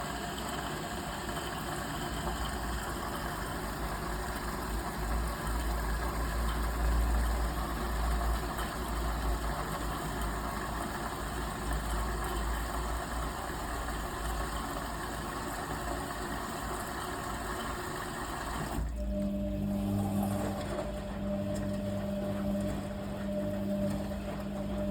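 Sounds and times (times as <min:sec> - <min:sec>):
washing machine motor and drum rumble: 0:00.0 - 0:24.9.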